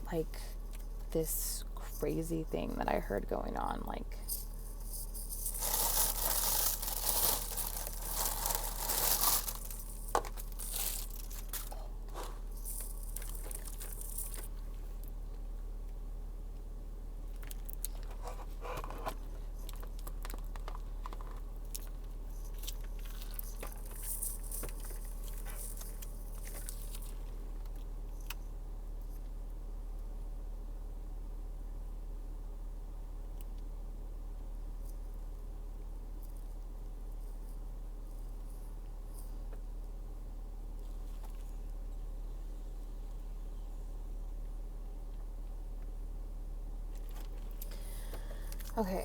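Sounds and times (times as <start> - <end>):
steady low hum: 0.0 - 49.0
handling noises: 4.2 - 14.6
food wrapping crinkling and tearing: 4.4 - 14.5, 17.4 - 27.3.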